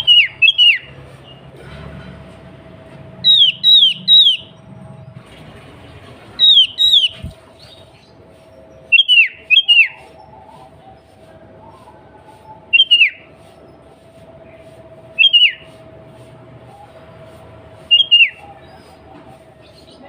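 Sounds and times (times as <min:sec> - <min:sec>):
bird whistling calls: 0:00.0 - 0:01.4, 0:03.2 - 0:04.6, 0:06.4 - 0:08.0, 0:08.6 - 0:13.4, 0:15.1 - 0:15.8, 0:17.8 - 0:20.0.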